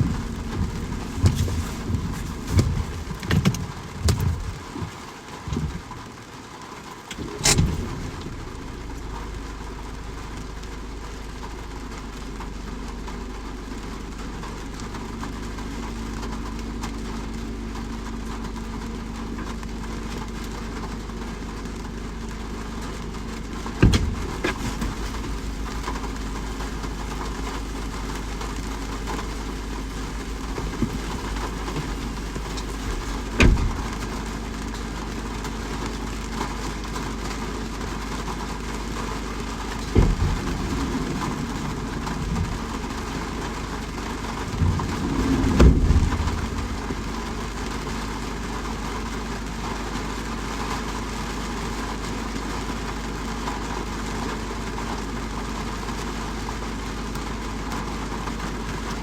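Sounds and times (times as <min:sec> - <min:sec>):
faint hum: 0:00.0 - 0:04.8, 0:07.1 - 0:49.3
low rumble: 0:00.0 - 0:04.9, 0:07.1 - 0:49.6
rain hiss: 0:00.0 - 0:59.0
sharp knocks: 0:23.8 - 0:26.8, 0:29.0 - 0:34.0.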